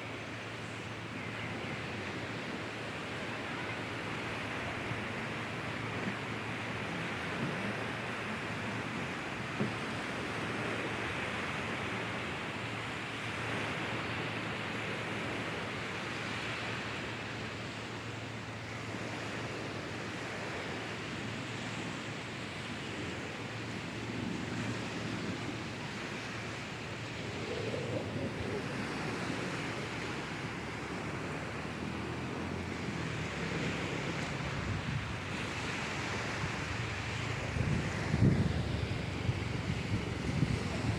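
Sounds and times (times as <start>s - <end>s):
sea surf on a beach: 0.0s - 40.9s.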